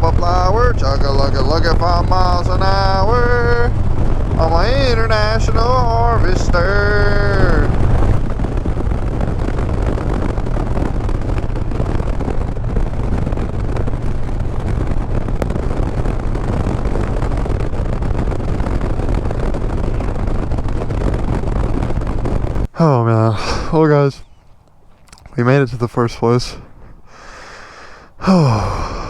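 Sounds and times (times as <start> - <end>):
motorcycle engine running: 0.0 - 22.7
wind on microphone: 0.0 - 25.4.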